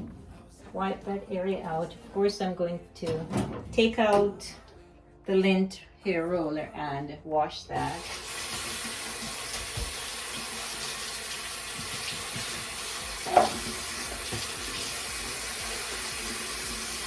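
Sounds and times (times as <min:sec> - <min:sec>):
tap water running into sink: 0:07.8 - 0:17.0
knock: 0:11.8 - 0:14.6.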